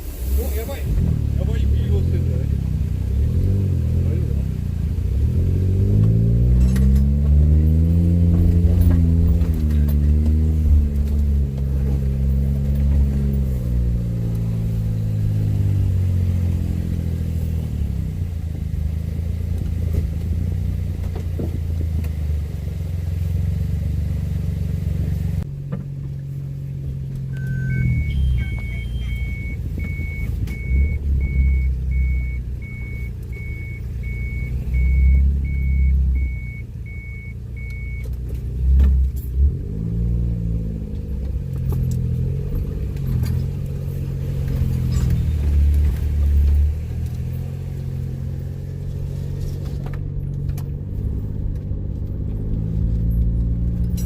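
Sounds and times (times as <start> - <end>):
vehicle engine running: 0.0 - 54.0
high electronic warning beeps: 27.4 - 38.0.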